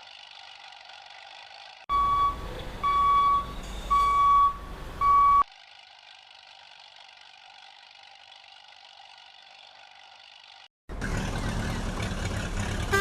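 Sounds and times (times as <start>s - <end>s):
reversing alarm beeps: 1.9s - 5.5s.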